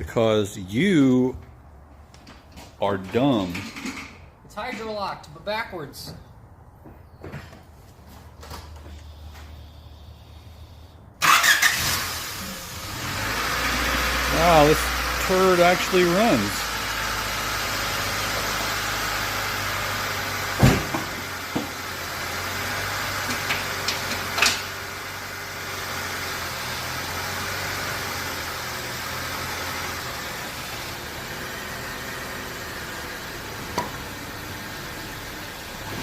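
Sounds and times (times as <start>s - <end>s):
car engine idling: 9.6s - 36.0s.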